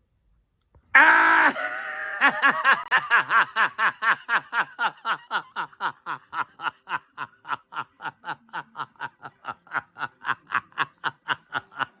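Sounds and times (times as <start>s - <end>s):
person snickering: 1.0s - 12.0s.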